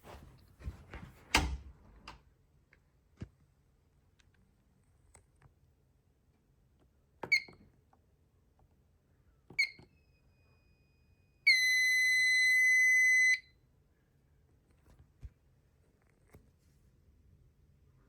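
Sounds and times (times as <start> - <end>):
fire alarm chirps: 9.6 - 13.6
high-pitched alarm beep: 11.5 - 13.5.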